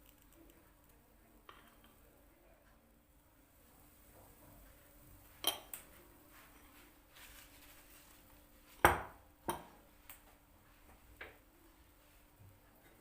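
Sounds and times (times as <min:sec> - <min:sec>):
faint steady hum: 0:00.0 - 0:13.0
dishes and utensils clinking: 0:05.3 - 0:06.9.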